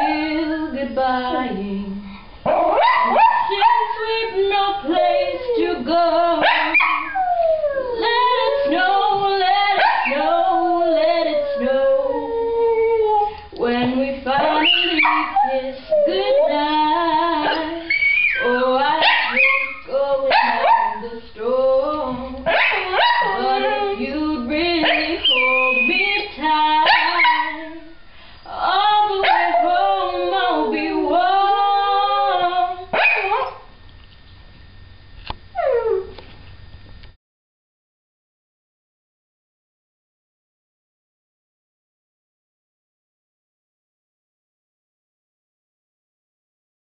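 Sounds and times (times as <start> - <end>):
dog howling: 2.5 - 4.0, 4.9 - 13.4, 14.4 - 21.0, 22.5 - 24.1, 24.8 - 27.8, 29.1 - 33.6, 35.5 - 36.2
person singing: 7.8 - 32.9.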